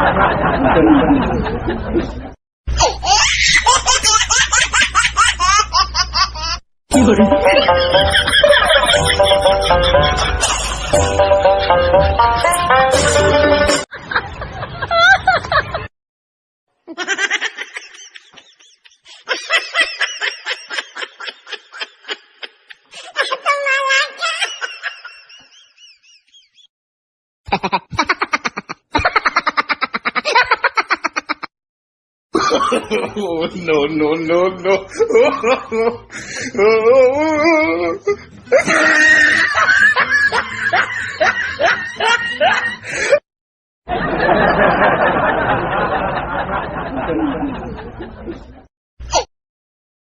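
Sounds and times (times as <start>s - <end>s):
high-pitched laugh: 0.0s - 15.9s, 16.8s - 26.6s, 27.5s - 31.5s, 34.9s - 43.2s.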